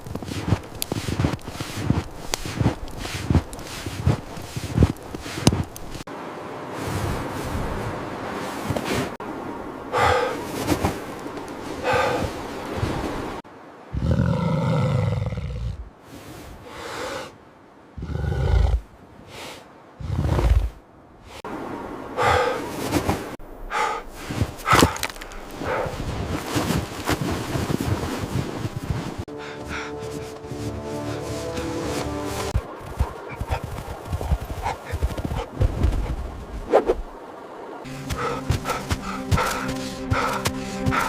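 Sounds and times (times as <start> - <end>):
gusty wind: 0.0 - 41.0
wolves growling and snarling: 24.6 - 26.1, 33.0 - 36.2, 38.1 - 41.0.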